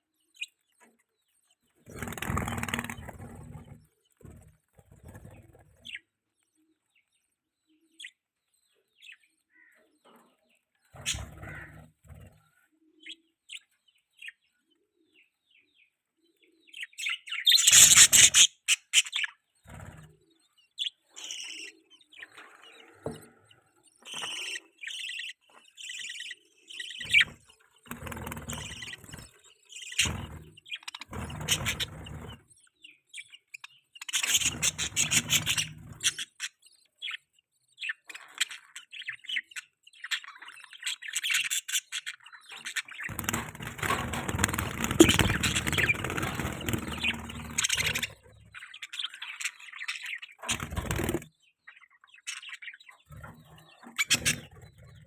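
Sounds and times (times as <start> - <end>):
budgerigars chirping: 11.0 - 14.4, 16.7 - 22.9, 23.5 - 55.0.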